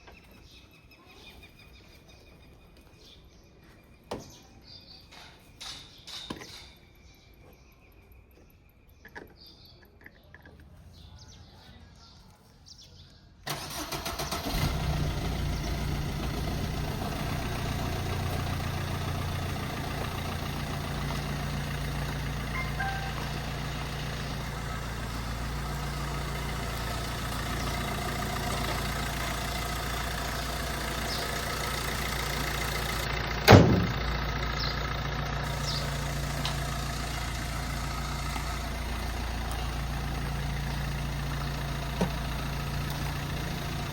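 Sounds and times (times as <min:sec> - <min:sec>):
engine idling: 0:13.5 - 0:43.9
engine starter cranking: 0:13.5 - 0:43.9.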